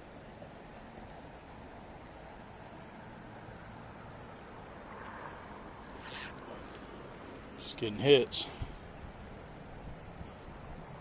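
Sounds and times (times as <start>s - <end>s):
high-pitched insect trill: 5.6s - 7.6s.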